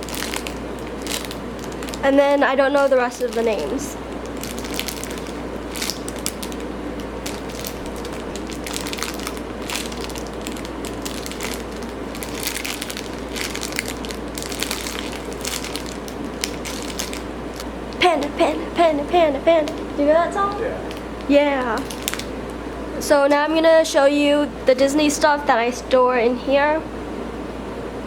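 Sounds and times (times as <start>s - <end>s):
plastic crackling: 0.0s - 18.3s, 19.6s - 22.6s.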